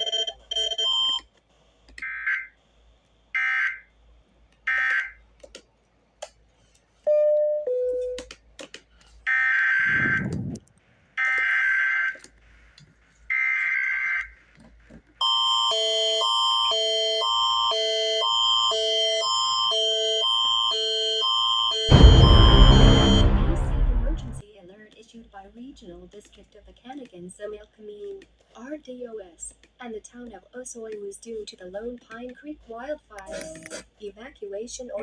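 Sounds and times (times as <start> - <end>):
emergency attention signal: 15.2 - 24.4
electronic alert beeps: 21.9 - 24.4.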